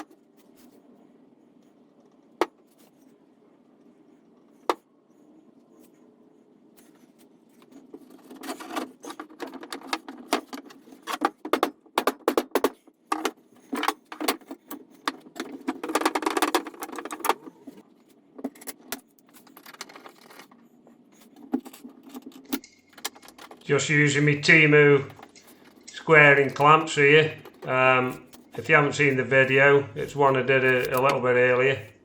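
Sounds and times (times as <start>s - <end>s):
faint low hum: 0.0s - 12.0s, 12.6s - 32.0s
clamp parts clicking and rattling: 7.6s - 17.8s, 18.4s - 20.6s, 21.2s - 23.7s, 24.6s - 28.7s, 30.0s - 31.3s.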